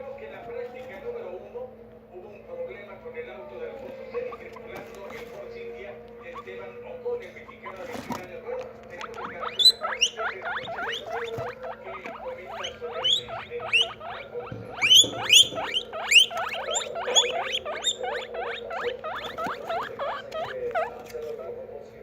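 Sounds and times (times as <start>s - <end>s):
guinea pigs wheeking: 0.0s - 1.6s, 2.6s - 22.0s.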